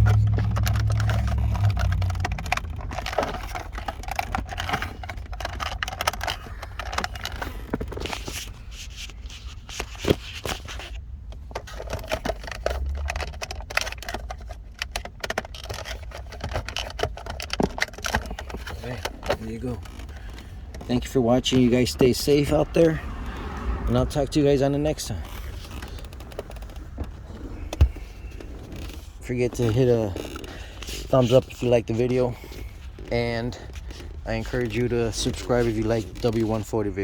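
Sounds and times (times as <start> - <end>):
low hum: 0.0 - 5.3
plastic clicks and scraping: 0.0 - 23.6, 24.8 - 37.0.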